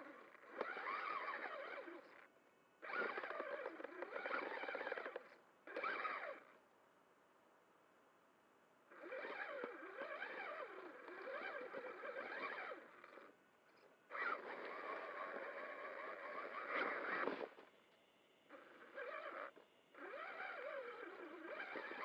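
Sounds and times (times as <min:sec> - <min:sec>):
electric motor whining: 0:00.0 - 0:02.2, 0:02.8 - 0:06.5, 0:08.9 - 0:13.4, 0:14.1 - 0:17.7, 0:18.5 - 0:22.0.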